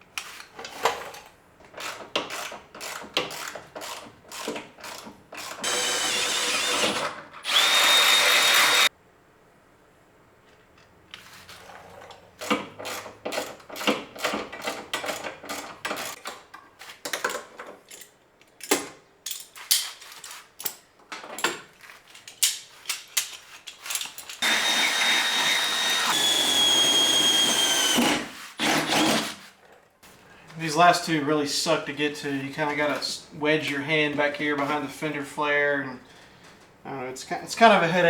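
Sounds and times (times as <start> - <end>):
power drill whining: 4.3 - 8.9, 24.4 - 29.4.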